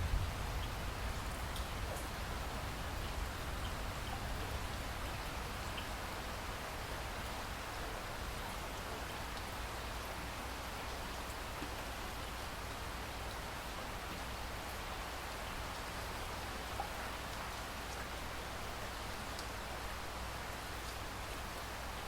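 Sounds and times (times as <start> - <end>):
steady rain hiss: 0.0 - 22.0
raindrop ticks: 1.5 - 2.1, 19.3 - 19.5.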